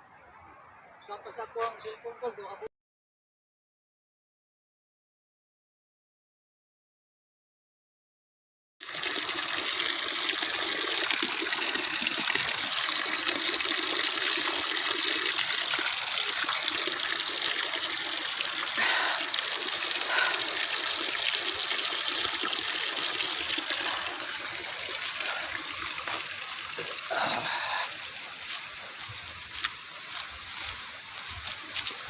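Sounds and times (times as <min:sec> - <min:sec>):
stream water rushing: 0:08.9 - 0:32.0.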